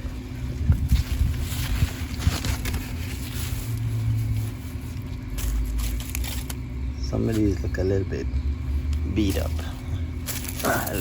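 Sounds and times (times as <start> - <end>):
wind buffeting microphone: 0.5 - 2.6
rustling: 0.7 - 6.7, 9.3 - 11.0.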